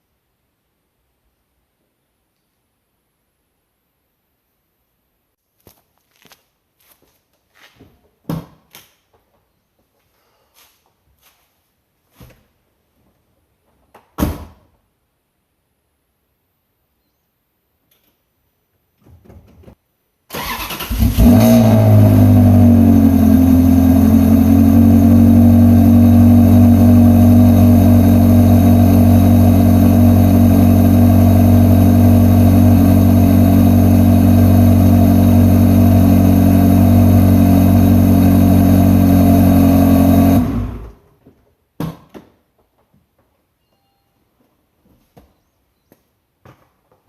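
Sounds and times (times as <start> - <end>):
engine cranking: 20.3 - 21.7
car engine idling loudly: 21.3 - 41.0.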